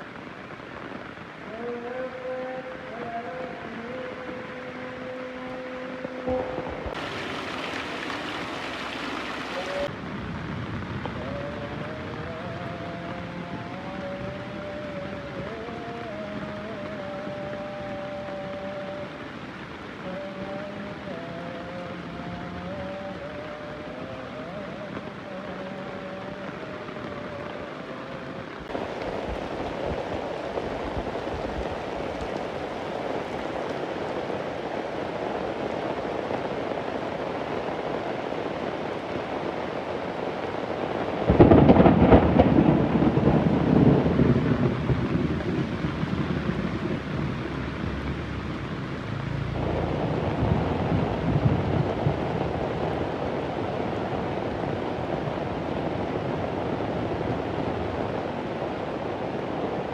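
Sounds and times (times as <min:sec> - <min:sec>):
heavy rain: 0:00.0 - 0:59.9
thunder crack and rumble: 0:41.2 - 0:48.1, 0:49.6 - 0:58.1.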